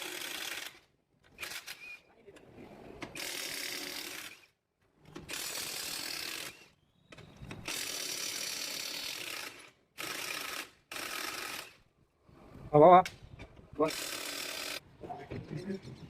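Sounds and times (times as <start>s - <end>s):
harsh rasping tool noise: 13.8s - 14.8s.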